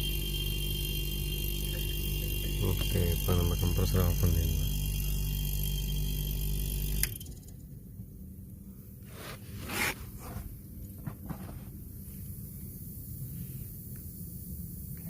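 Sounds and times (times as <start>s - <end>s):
refrigeration compressor humming: 0.0s - 15.0s
short scraping sounds: 9.1s - 10.5s.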